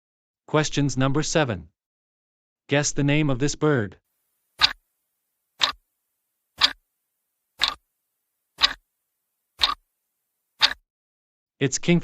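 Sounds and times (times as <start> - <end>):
clock ticking: 4.6 - 4.8, 5.6 - 5.8, 6.6 - 6.8, 7.6 - 7.8, 8.6 - 8.8, 9.6 - 9.8, 10.6 - 10.8.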